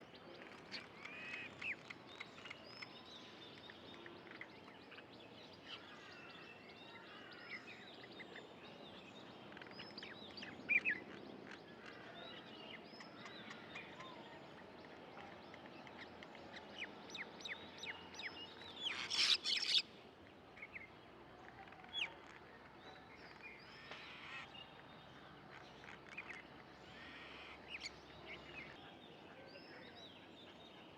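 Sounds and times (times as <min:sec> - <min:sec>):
small birds chirping: 0:00.1 - 0:20.9.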